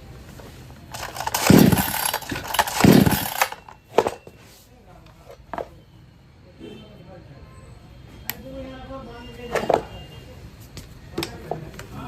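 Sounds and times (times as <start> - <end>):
chainsaw engine surging: 1.0 - 3.6.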